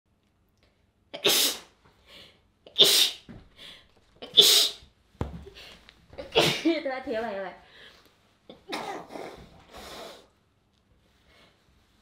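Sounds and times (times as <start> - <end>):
person sneezing: 1.2 - 1.7, 2.7 - 3.3, 4.2 - 4.8, 6.2 - 6.7, 8.6 - 10.3.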